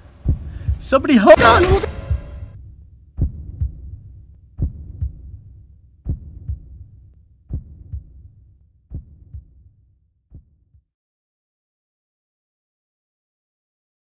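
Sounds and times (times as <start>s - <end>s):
heartbeat thumps: 0.0s - 9.7s, 10.3s - 10.9s.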